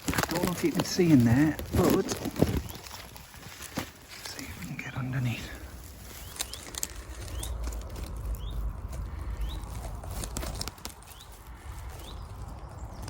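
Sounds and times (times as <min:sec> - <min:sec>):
bramble rustling and clicks: 0:00.0 - 0:13.0
low rumble: 0:04.8 - 0:13.0.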